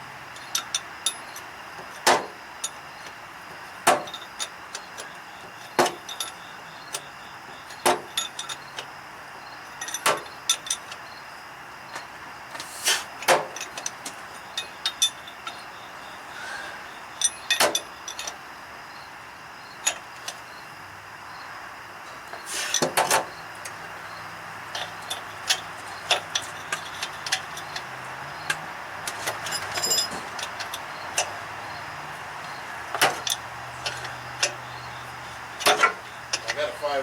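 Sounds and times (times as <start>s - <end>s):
metal tools clinking and clanking: 0.3s - 3.2s, 3.8s - 8.9s, 9.7s - 11.1s, 13.2s - 15.9s, 17.1s - 18.4s, 19.8s - 20.4s, 22.3s - 23.8s, 24.7s - 37.0s
steady hiss: 11.7s - 17.2s, 18.2s - 37.0s.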